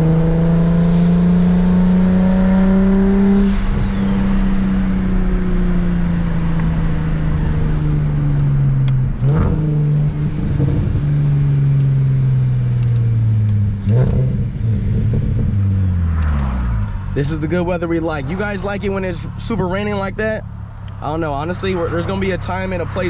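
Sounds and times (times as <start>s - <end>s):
high whine: 0.0s - 13.3s
car engine running: 0.0s - 23.0s.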